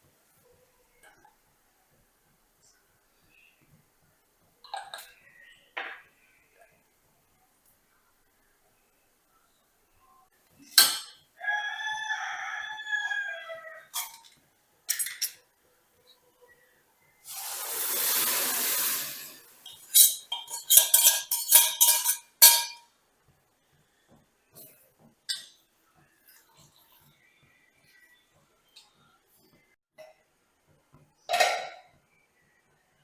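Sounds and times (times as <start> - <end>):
rooster crowing: 11.4 - 13.9
glass and metal dishes clinking: 13.9 - 15.4, 19.6 - 22.8, 25.3 - 25.6, 31.3 - 31.9
hiss: 17.3 - 19.8.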